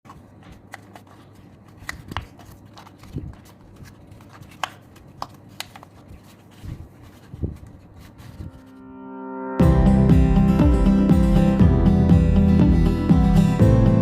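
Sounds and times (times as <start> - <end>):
paper clicking and crinkling: 0.1 - 8.7.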